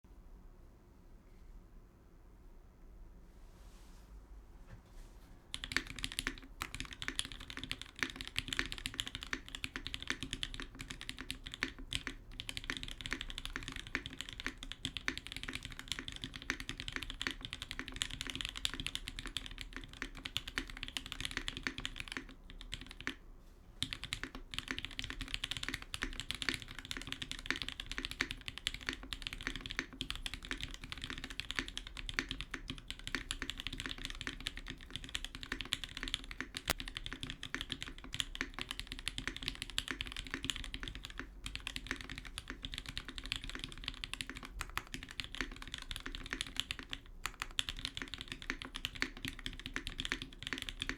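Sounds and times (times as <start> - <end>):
typing on mechanical keyboard: 5.5 - 23.2, 23.8 - 50.9.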